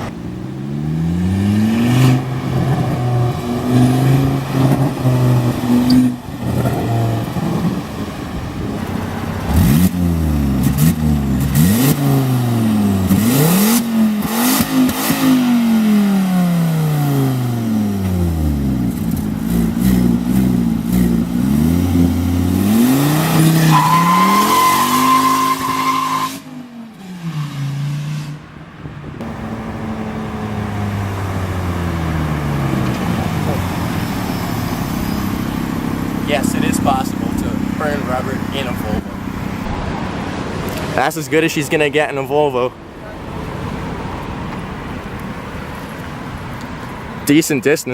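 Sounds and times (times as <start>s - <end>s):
loud car engine revving: 0.0s - 41.1s
steady high squeal: 33.7s - 37.1s.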